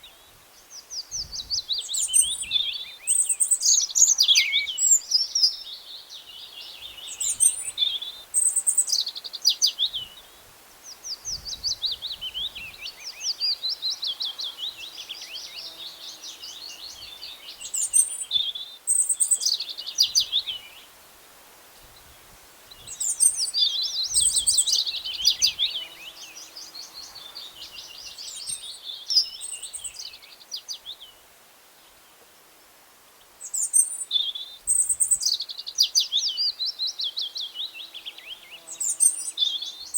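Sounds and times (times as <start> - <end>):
songbirds singing: 0.0 - 21.0, 21.7 - 32.4, 33.1 - 39.9.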